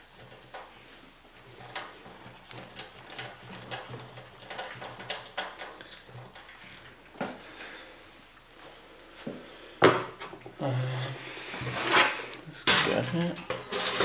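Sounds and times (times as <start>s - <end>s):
screws clicking in computer case: 1.6s - 6.6s.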